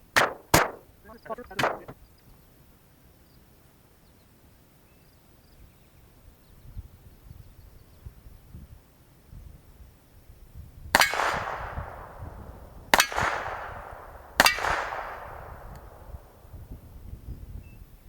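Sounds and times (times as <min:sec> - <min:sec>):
gunshots with long echo: 0:00.0 - 0:02.0, 0:11.0 - 0:16.6.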